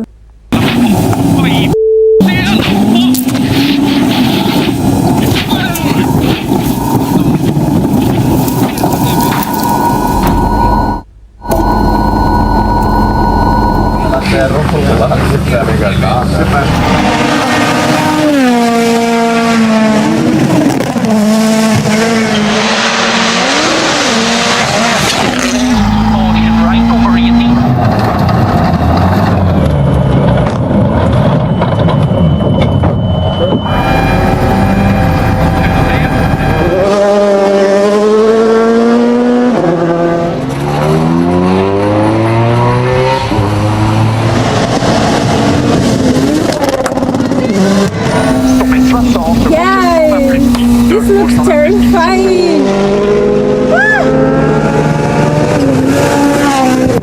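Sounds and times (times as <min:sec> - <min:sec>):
gear upshift: 0:00.0 - 0:14.4
rally car engine revving: 0:00.0 - 0:57.0.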